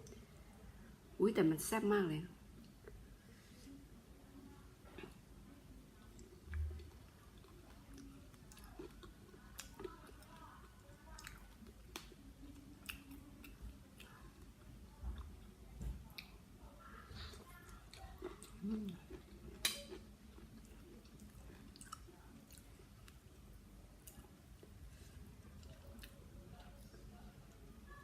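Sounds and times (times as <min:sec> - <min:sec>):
close chewing: 0:06.0 - 0:16.3, 0:17.2 - 0:23.2.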